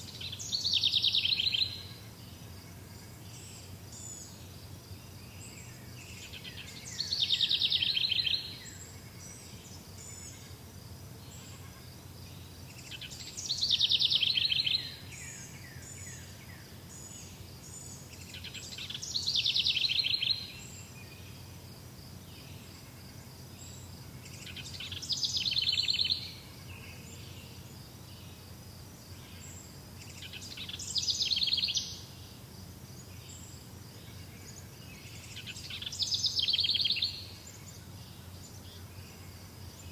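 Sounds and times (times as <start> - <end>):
songbird trilling: 0.1 - 2.0, 6.2 - 8.8, 12.8 - 15.4, 18.2 - 20.7, 24.4 - 26.4, 30.1 - 32.1.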